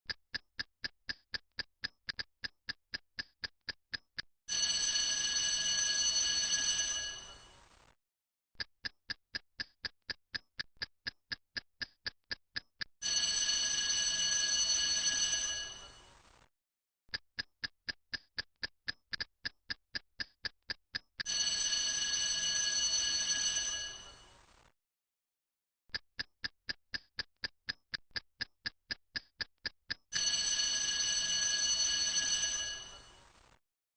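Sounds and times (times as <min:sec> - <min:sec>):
clock ticking: 0:00.0 - 0:04.3, 0:08.6 - 0:12.7, 0:17.1 - 0:21.1, 0:25.9 - 0:30.0
ringing alarm bell: 0:04.5 - 0:07.5, 0:13.0 - 0:16.0, 0:21.3 - 0:24.3, 0:30.2 - 0:33.2.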